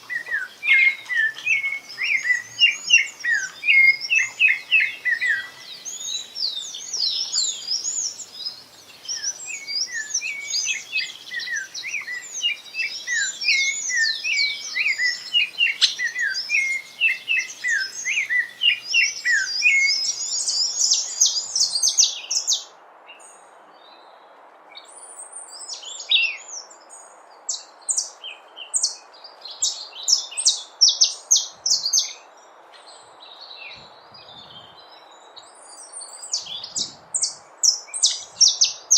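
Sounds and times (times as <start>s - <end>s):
steady hiss: 0.0s - 23.7s
small birds chirping and singing: 0.0s - 38.9s.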